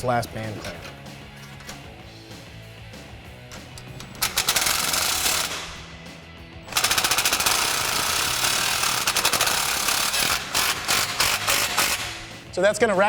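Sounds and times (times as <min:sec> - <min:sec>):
impact wrench hammering: 0:03.5 - 0:06.0, 0:06.7 - 0:12.4.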